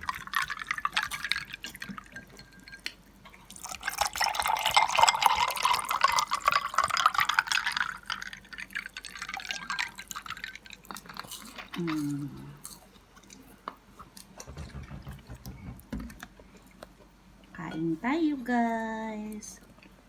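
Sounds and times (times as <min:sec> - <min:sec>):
juice pouring into a glass: 0:00.0 - 0:11.9.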